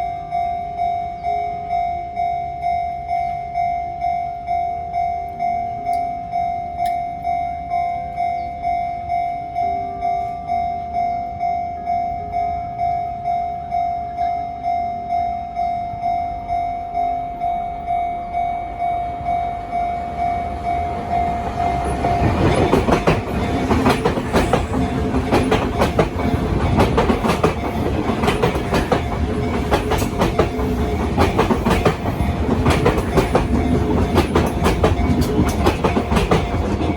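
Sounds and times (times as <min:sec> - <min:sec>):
train wheels clattering: 0:20.6 - 0:36.9.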